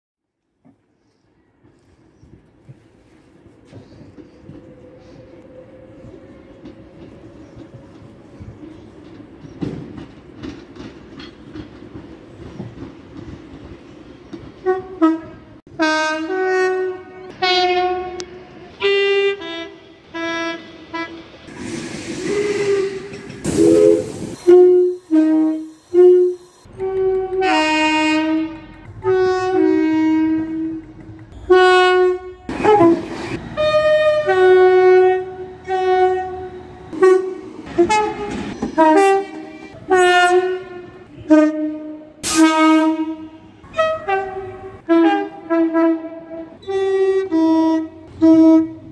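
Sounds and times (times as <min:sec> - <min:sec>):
passing train rushing: 0:01.5 - 0:48.9
two-tone train horn blasts: 0:14.6 - 0:21.3, 0:22.3 - 0:48.9.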